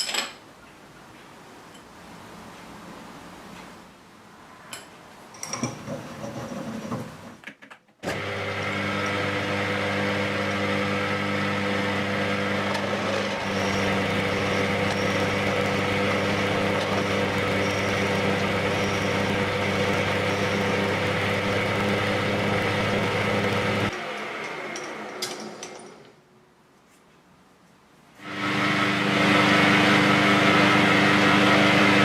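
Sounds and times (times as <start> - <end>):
lathe motor humming and whining: 8.1 - 23.9.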